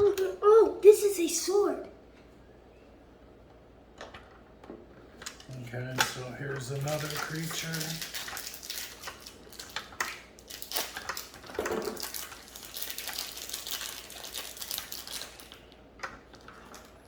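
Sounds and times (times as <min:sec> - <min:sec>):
plastic toy pieces clicking and rattling: 0:05.2 - 0:17.0
packaging crinkling: 0:05.3 - 0:17.0.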